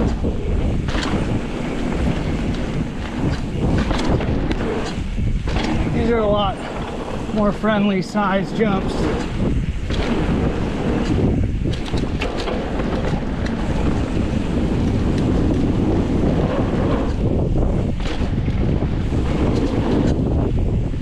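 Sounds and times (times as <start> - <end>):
bike tyres and frame rattling: 0.0 - 21.0
wind rushing over microphone: 0.0 - 21.0.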